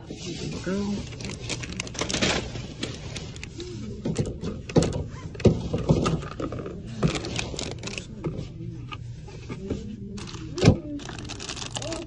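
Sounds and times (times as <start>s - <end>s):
packages set into a basket: 0.4s - 3.5s, 10.2s - 12.0s.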